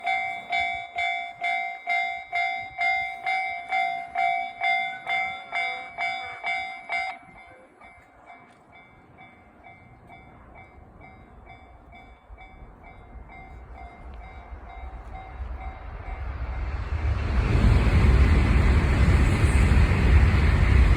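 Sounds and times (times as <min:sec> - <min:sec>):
level crossing warning bell: 0:00.0 - 0:16.2
approaching train rumble: 0:00.0 - 0:20.9.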